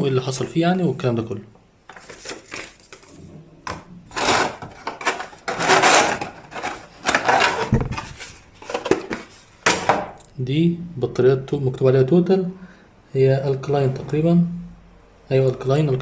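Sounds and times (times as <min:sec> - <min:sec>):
packaging rustling: 0:01.9 - 0:09.5.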